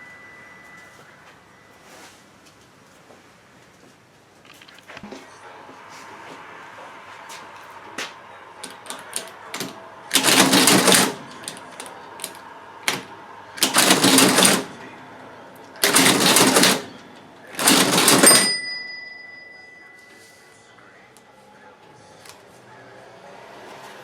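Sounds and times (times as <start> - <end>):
cash register bell ringing: 0.0 - 2.1, 8.6 - 20.8
cash register key clicks: 8.6 - 14.9, 15.6 - 19.0
cash register mechanism clattering: 8.6 - 19.5.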